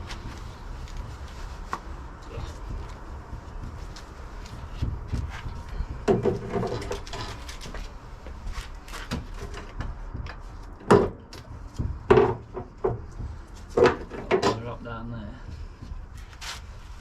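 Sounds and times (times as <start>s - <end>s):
tools knocking and clunking: 4.8s - 7.8s, 9.0s - 14.8s.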